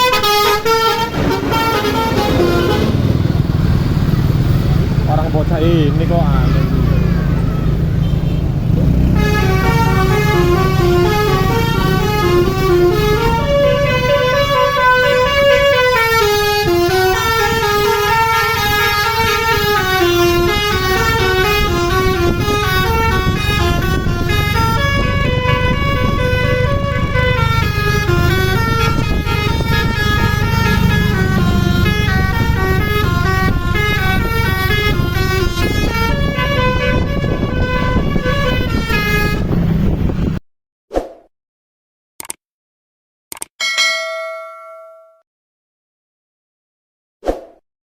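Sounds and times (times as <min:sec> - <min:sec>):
musical bus horn melody: 0:00.0 - 0:03.3, 0:08.0 - 0:40.4
bus rumbling: 0:00.0 - 0:40.4.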